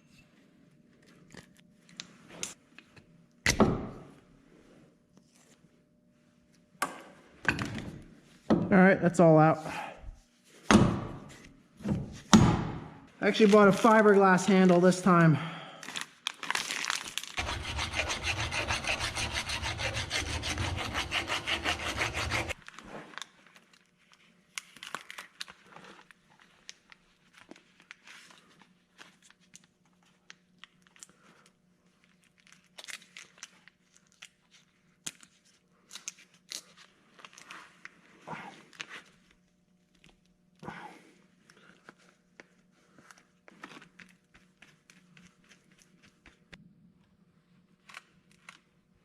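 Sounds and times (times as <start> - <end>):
hand tool scraping hard material: 17.4 - 22.6.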